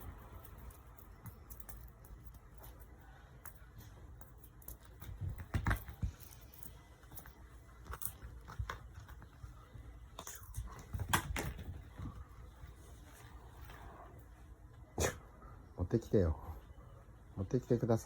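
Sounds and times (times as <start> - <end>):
cat toy clicks and rustles: 0.0 - 13.7.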